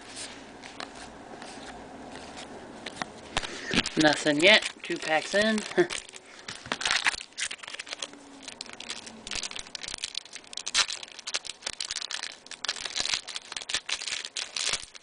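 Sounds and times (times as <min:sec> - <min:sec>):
cards being handled: 0:00.1 - 0:09.7
wrapper tearing and crinkling: 0:03.3 - 0:15.0.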